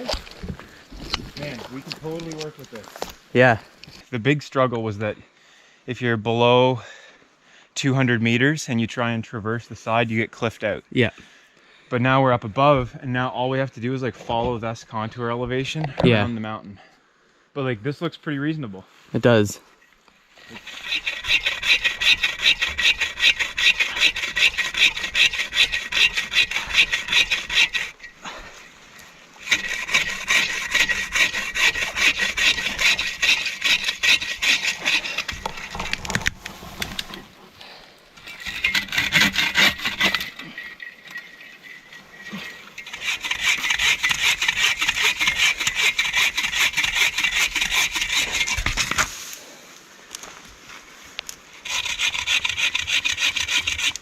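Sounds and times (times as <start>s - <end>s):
hand saw cutting wood: 20.4s - 28.1s, 29.4s - 37.2s, 38.2s - 41.4s, 42.2s - 49.2s, 51.6s - 54.0s.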